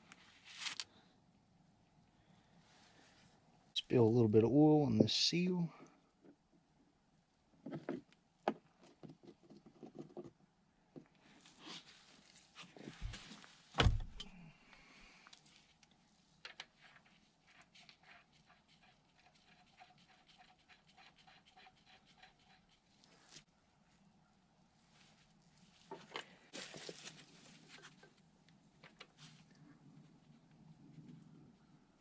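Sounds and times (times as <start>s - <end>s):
heavier thump: 13.8s - 14.2s.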